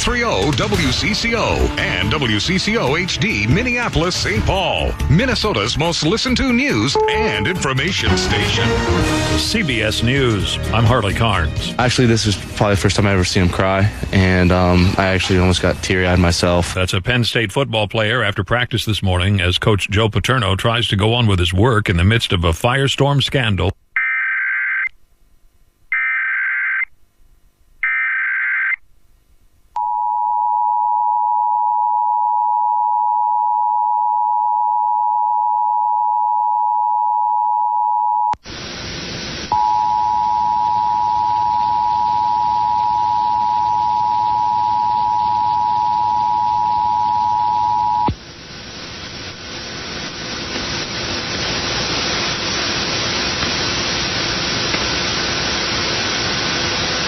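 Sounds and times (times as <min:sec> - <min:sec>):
loud static: 0:00.0 - 0:29.7, 0:38.4 - 0:57.0
hiss with low hum: 0:00.4 - 0:23.7, 0:38.4 - 0:57.0
two-tone attention signal: 0:06.9 - 0:09.0.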